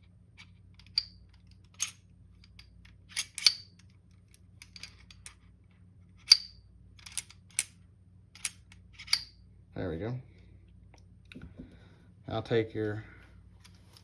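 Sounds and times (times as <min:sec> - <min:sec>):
pistol parts clicking metallically: 0:00.8 - 0:05.5, 0:06.2 - 0:09.4.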